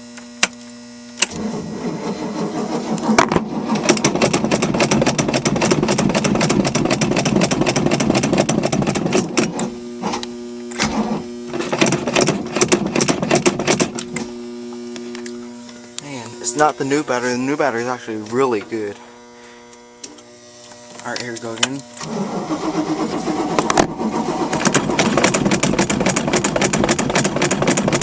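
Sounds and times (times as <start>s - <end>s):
steady electrical hum: 0.0s - 27.1s
starter motor cranking: 1.2s - 14.2s, 22.0s - 28.0s.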